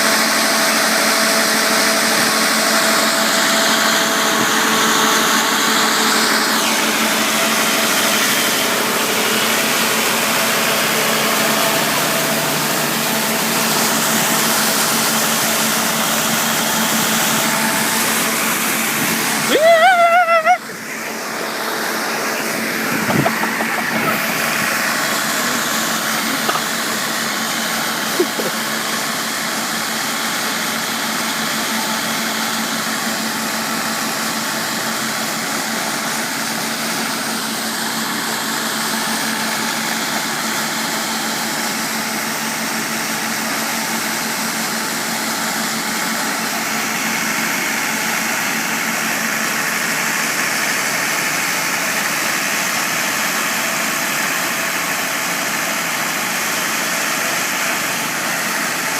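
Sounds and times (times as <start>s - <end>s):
diesel engine driving pump: 0.0s - 58.9s.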